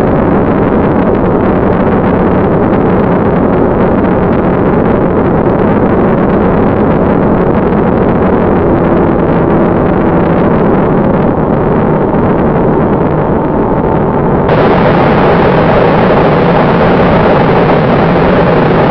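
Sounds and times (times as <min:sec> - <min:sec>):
electric ducted fan whine: 0:00.0 - 0:18.9
wind rushing: 0:10.8 - 0:18.9.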